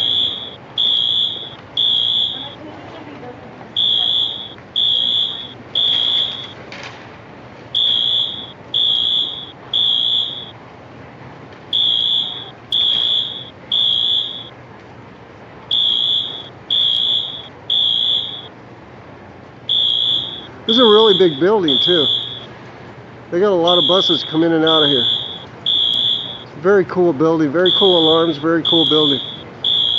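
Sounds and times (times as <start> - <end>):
fire alarm horn beeping: 0.0 - 2.7, 3.7 - 6.6, 7.7 - 10.6, 11.7 - 14.6, 15.7 - 18.5, 19.7 - 22.6, 23.4 - 26.8, 27.6 - 29.9.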